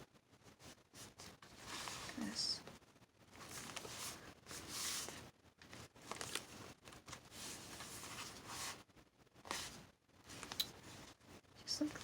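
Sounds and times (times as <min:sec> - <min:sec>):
paper rustling: 0:00.5 - 0:02.4, 0:03.3 - 0:08.8, 0:09.4 - 0:11.2.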